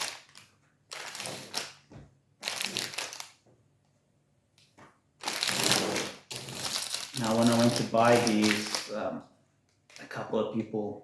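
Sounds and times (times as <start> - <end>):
plastic wrappers crinkling: 0.0 - 1.8, 2.4 - 3.4, 5.2 - 9.2, 9.8 - 10.4.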